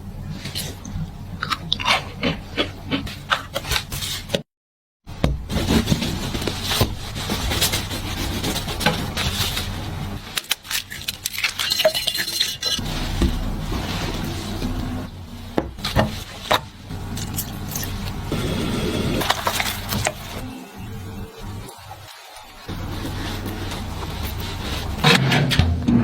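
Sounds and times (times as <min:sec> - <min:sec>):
scraping and rustling: 0:05.5 - 0:20.4, 0:21.7 - 0:25.6
utensils and dishes clinking: 0:10.4 - 0:12.8.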